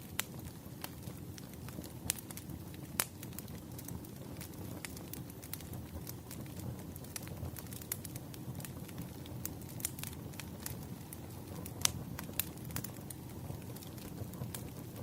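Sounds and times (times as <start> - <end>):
campfire rumble: 0.0 - 15.0
wood crackles and pops: 0.0 - 15.0.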